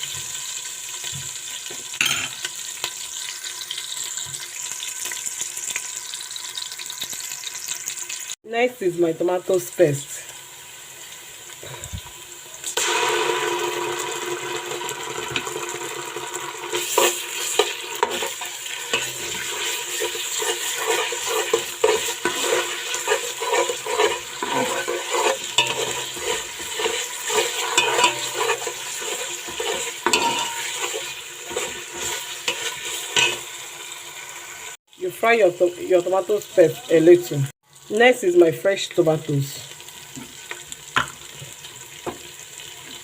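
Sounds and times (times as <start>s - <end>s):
food sizzling in a pot: 0.0s - 43.0s
spoon scraping against pot: 16.7s - 33.6s.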